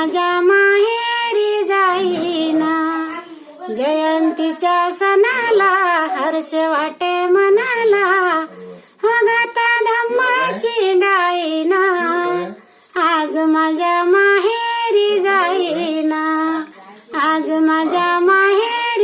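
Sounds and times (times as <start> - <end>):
woman singing in a high voice: 0.0 - 19.0
singer breathing: 8.5 - 9.0.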